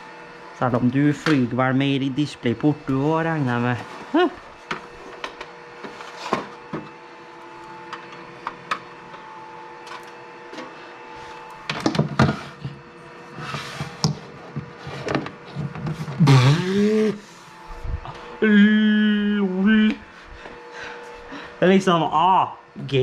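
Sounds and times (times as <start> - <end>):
short voiced sound bending in pitch: 16.2 - 17.3.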